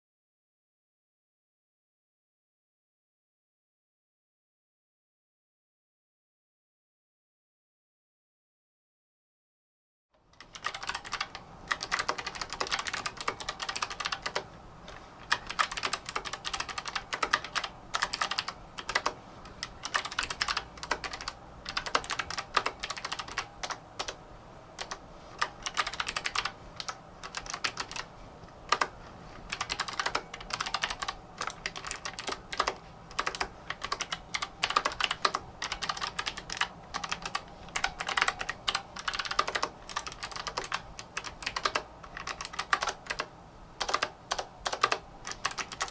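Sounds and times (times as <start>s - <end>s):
mechanical keyboard typing: 10.4s - 24.2s, 24.8s - 45.9s.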